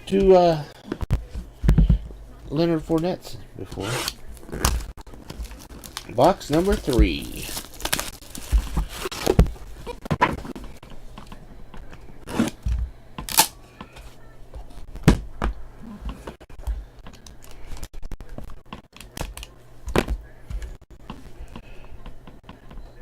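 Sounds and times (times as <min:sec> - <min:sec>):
cards and packaging clicking: 0:03.8 - 0:10.5, 0:17.1 - 0:20.0.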